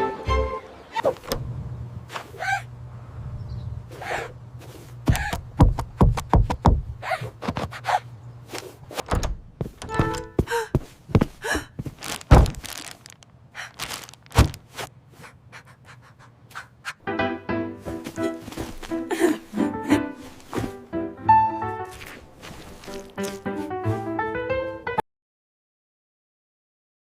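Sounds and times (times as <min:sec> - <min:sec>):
low steady hum: 0:00.0 - 0:16.9
cartoon impact thuds: 0:12.2 - 0:12.7, 0:14.3 - 0:14.7.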